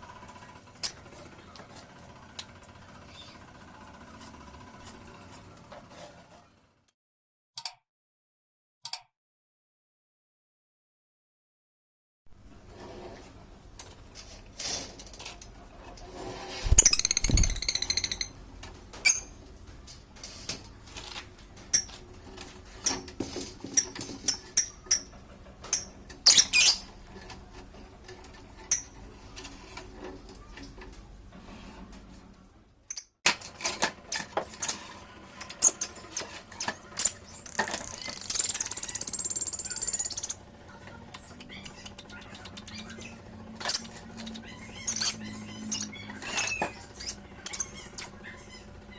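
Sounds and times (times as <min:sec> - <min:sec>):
lovebird chirping: 0:16.7 - 0:18.3, 0:37.9 - 0:40.4.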